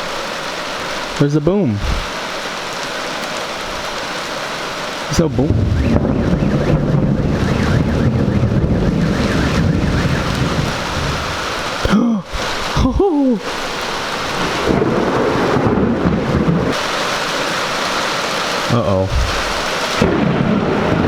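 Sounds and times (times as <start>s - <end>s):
heavy rain: 0.0s - 21.0s
rising and falling pitched sounds: 5.1s - 11.8s
thunder rumbling: 5.1s - 21.0s.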